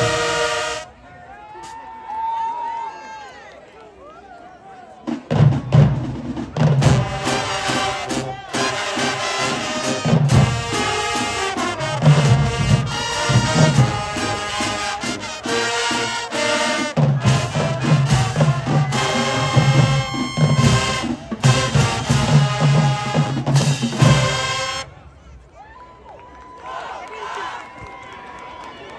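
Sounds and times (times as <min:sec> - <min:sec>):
school band playing: 0:00.0 - 0:00.9, 0:05.1 - 0:25.0.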